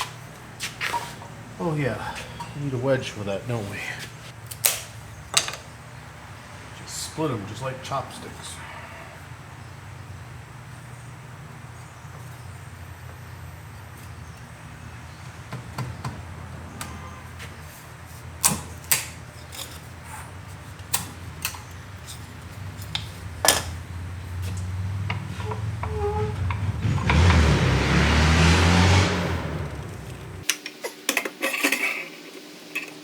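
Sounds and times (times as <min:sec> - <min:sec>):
wood splitting clicks and knocks: 0:04.5 - 0:05.7.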